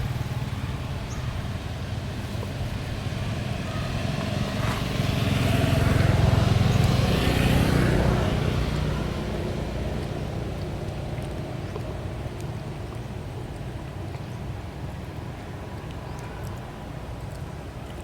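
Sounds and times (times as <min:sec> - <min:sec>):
motor vehicle passing by: 0:00.0 - 0:12.9.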